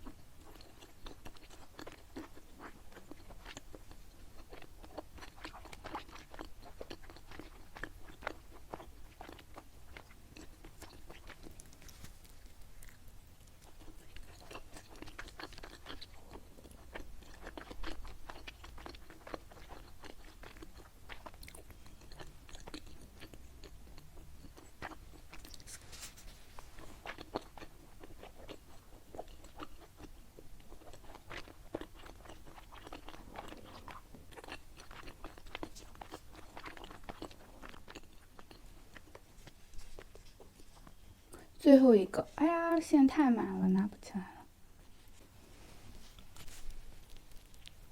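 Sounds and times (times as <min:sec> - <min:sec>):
wet chewing with mouth clicks: 0:00.0 - 0:41.6, 0:45.9 - 0:47.9.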